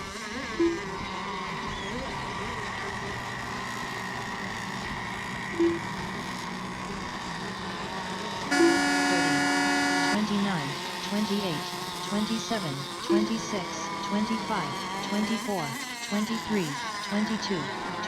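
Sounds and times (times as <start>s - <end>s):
radio-controlled boat engines: 0.0s - 18.0s
short beeps: 5.6s - 6.0s, 8.5s - 10.2s, 12.4s - 15.2s
horn: 8.5s - 10.2s.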